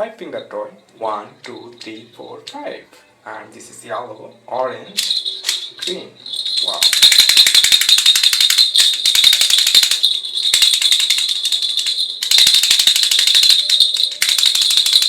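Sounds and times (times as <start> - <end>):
steady high ring: 0.0 - 2.5, 3.7 - 14.7
plastic toy rattling: 4.8 - 15.0.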